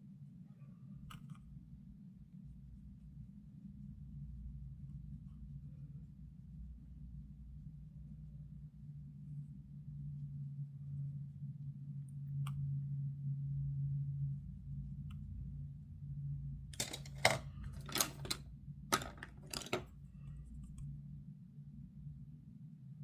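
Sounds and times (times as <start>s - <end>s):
steady low hum: 0.0s - 23.0s
rustling and clattering handling: 16.8s - 20.0s.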